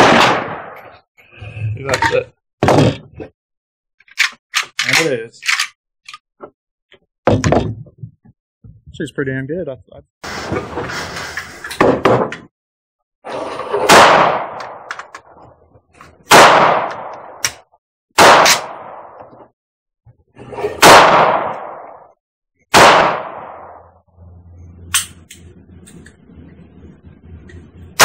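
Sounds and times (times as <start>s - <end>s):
rifle shots with echo: 0.0s - 0.8s, 13.9s - 14.9s, 16.3s - 17.4s, 18.2s - 19.2s, 20.8s - 22.0s, 22.7s - 23.9s.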